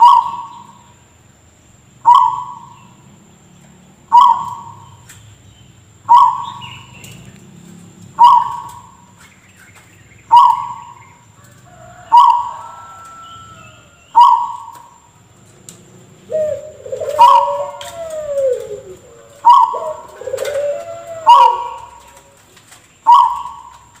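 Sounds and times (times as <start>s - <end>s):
wavering gliding bird calls: 0.0s - 1.0s, 2.0s - 3.0s, 4.1s - 5.1s, 6.0s - 7.3s, 8.2s - 15.2s, 16.2s - 24.0s.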